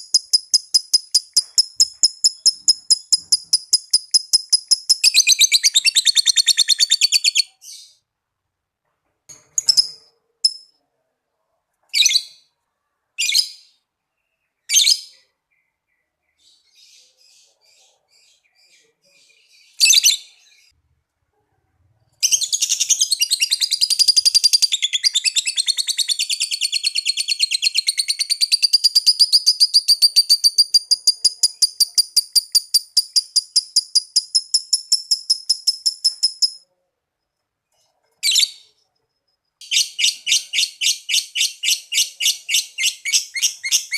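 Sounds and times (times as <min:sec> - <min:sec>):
bird sharp chirps: 0:00.0 - 0:08.0, 0:22.2 - 0:36.6.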